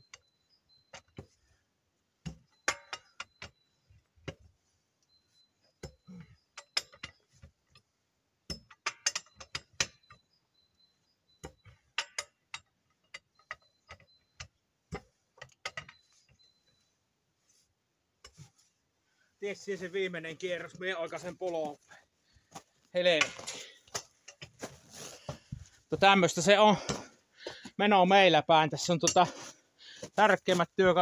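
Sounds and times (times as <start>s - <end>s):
hand tools clicking on wheel nuts: 2.2s - 4.6s, 5.7s - 10.4s, 11.3s - 16.6s.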